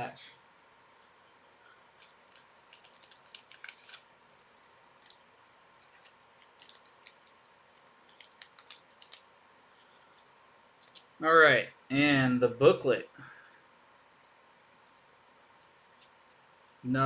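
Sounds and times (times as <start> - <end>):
rustling and clicking of cards: 2.0 - 5.2, 5.8 - 9.3, 10.1 - 11.2.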